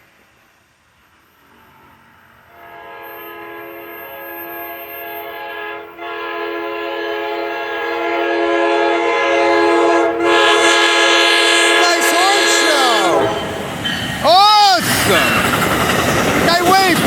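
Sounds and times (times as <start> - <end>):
locomotive air horn: 2.5 - 13.8.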